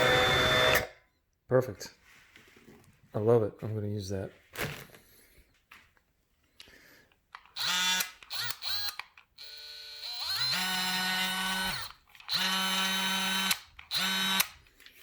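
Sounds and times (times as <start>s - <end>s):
power tool motor whining: 0.0s - 1.0s, 7.5s - 14.6s.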